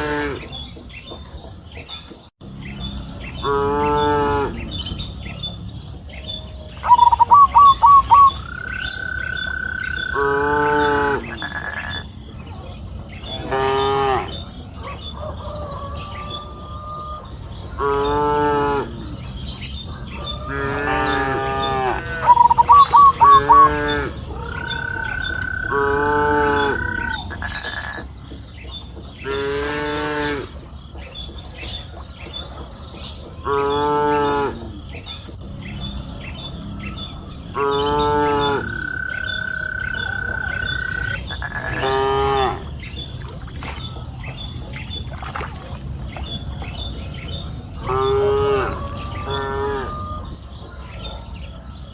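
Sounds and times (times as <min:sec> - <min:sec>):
cows mooing: 0:00.0 - 0:00.5, 0:03.4 - 0:04.8, 0:09.5 - 0:12.0, 0:13.3 - 0:14.4, 0:17.8 - 0:19.1, 0:20.4 - 0:27.9, 0:33.4 - 0:34.8, 0:37.5 - 0:42.8, 0:47.8 - 0:50.2.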